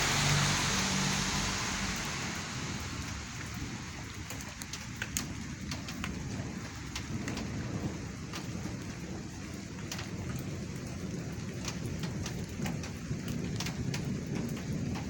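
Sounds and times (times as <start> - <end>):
loud rushing noise: 0.0 - 4.0
rain drops ticking on a surface: 0.0 - 15.0
steady rain hiss: 0.0 - 15.0.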